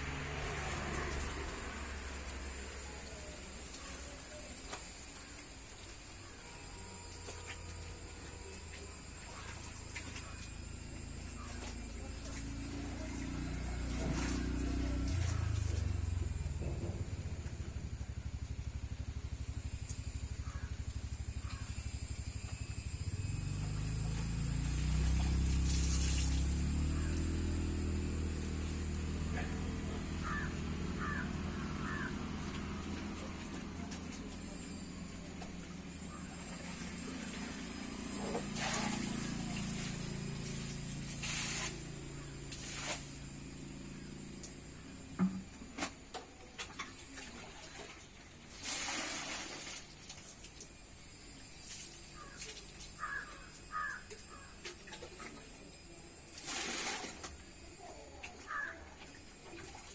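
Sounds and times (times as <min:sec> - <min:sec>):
vehicle engine humming: 0:00.0 - 0:46.1.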